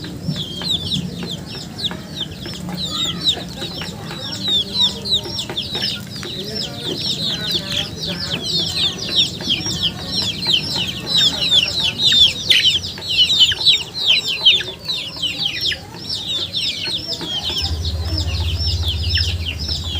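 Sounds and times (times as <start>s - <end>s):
chicks peeping: 0.0s - 19.9s
low hum: 17.3s - 19.9s.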